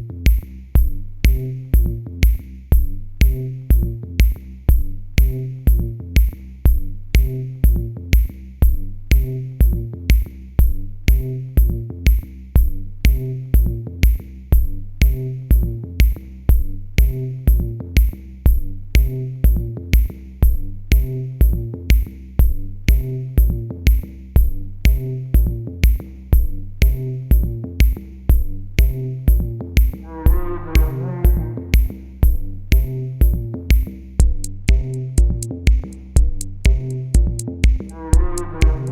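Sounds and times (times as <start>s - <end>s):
electronic dance music: 30.2s - 31.9s, 34.7s - 38.9s.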